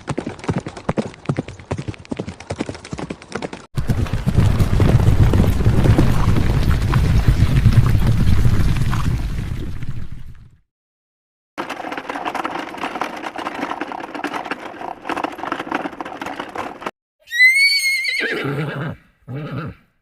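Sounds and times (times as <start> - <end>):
horse hooves galloping: 0.0 - 10.4, 11.6 - 16.9
horse neighing: 17.2 - 19.9.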